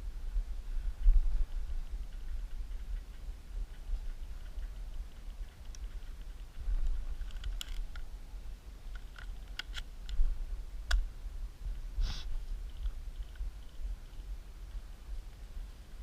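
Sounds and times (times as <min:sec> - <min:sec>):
steady low rumble: 0:00.0 - 0:16.0
short hiss: 0:12.0 - 0:12.4.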